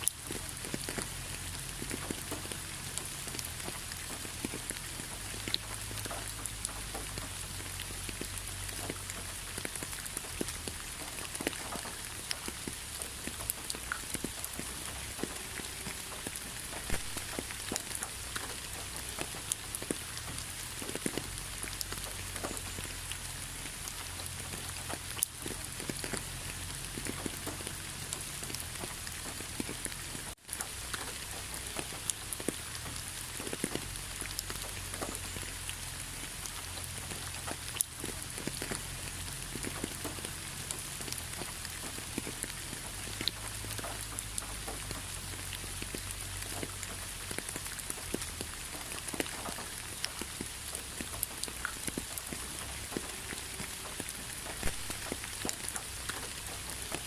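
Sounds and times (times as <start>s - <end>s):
rain hissing: 0.0s - 57.0s
raindrops ticking: 0.0s - 57.0s.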